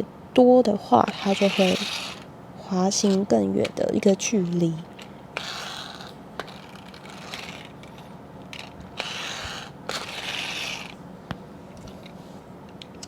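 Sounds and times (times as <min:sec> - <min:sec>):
toy pull-back motor ratcheting: 0:01.1 - 0:02.3, 0:02.9 - 0:11.0.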